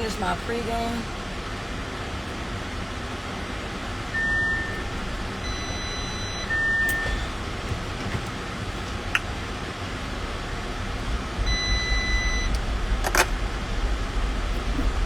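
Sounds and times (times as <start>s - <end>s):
car engine rumble: 0.0s - 15.0s
short high beeps: 11.5s - 12.6s.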